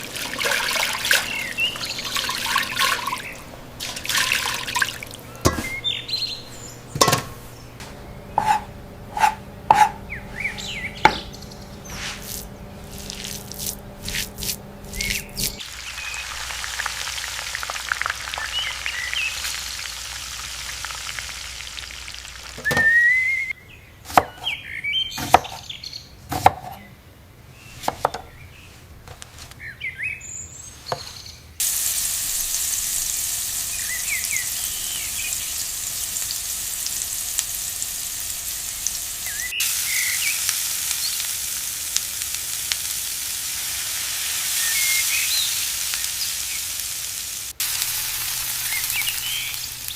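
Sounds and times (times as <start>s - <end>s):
food frying sizzle: 0.0s - 23.5s, 31.6s - 49.9s
faint birds chirping: 0.0s - 31.6s, 33.6s - 36.5s, 38.5s - 41.3s, 48.5s - 49.9s.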